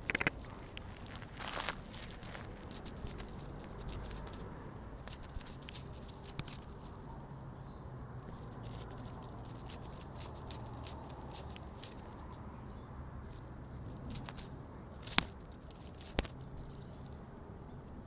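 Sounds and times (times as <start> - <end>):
sharp clicks: 0.0 - 0.5
faint crackles and ticks: 0.0 - 7.0.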